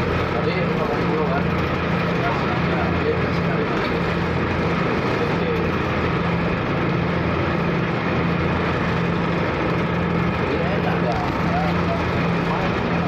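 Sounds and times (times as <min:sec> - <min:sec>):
ferry engine humming: 0:00.0 - 0:13.0.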